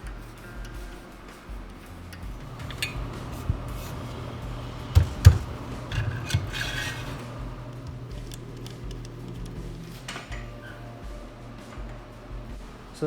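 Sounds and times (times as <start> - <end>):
low steady hum: 2.2 - 13.0
metal parts knocking: 2.3 - 10.7
metal scraping rub: 2.3 - 13.0.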